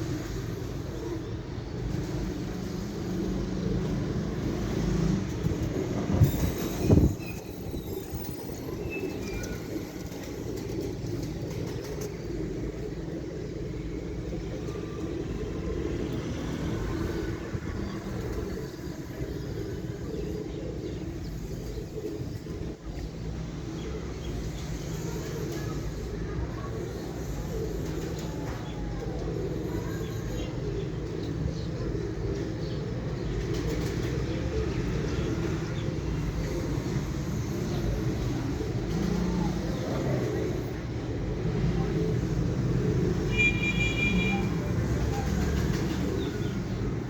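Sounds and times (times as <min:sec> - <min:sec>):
pigeons cooing: 0:00.0 - 0:47.0.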